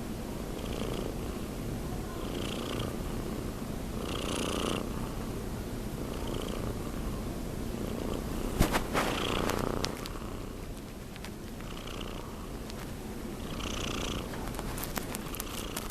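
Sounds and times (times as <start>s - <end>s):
cat snoring: 0.6s - 1.4s, 2.2s - 3.0s, 4.0s - 5.2s, 6.0s - 7.1s, 7.8s - 10.6s, 11.7s - 12.5s, 13.4s - 14.4s, 15.3s - 15.9s.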